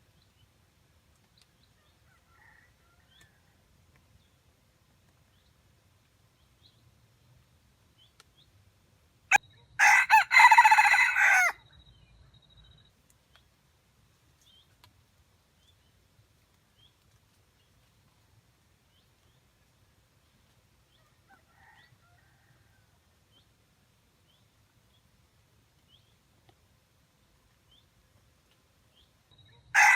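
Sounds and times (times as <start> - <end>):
faint small bird chirps: 9.3 - 9.8, 28.9 - 29.8
rooster crowing: 9.8 - 11.6.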